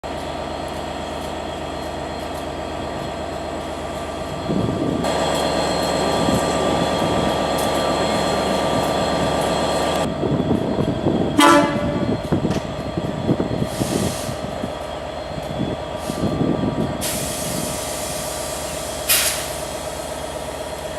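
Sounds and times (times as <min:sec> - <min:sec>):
train mechanical hum: 0:00.0 - 0:20.9
short high train horn toot: 0:11.4 - 0:12.1.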